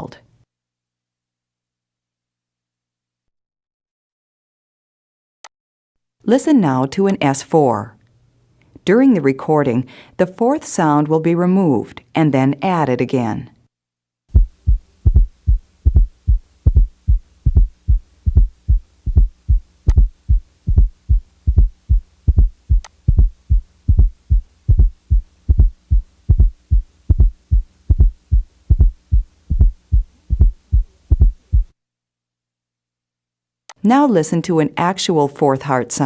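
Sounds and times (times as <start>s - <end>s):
faint steady hum: 14.3s - 31.8s
heartbeat thumps: 14.3s - 31.8s.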